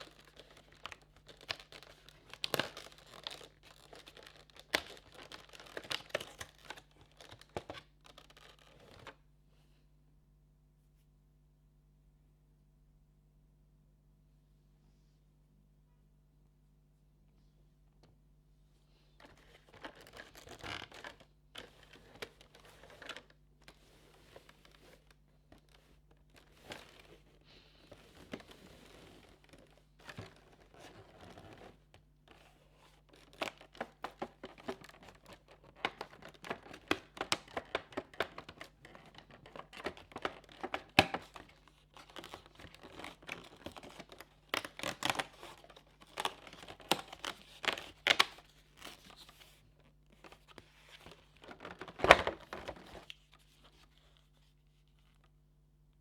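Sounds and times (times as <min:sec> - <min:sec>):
paper and plastic tearing and crinkling: 0:00.0 - 0:09.1, 0:19.2 - 0:27.4, 0:32.9 - 0:49.3, 0:50.2 - 0:53.3.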